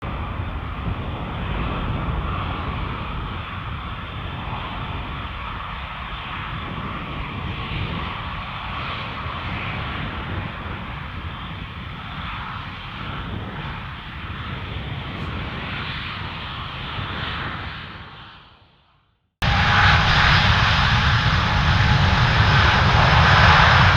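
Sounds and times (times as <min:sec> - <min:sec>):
jet engines roaring: 0:19.4 - 0:23.9.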